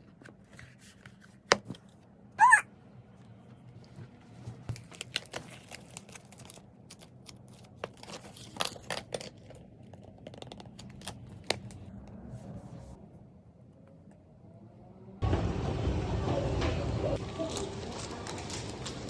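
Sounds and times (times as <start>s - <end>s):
packaging crinkling and rustling: 3.8s - 11.8s, 17.4s - 19.0s.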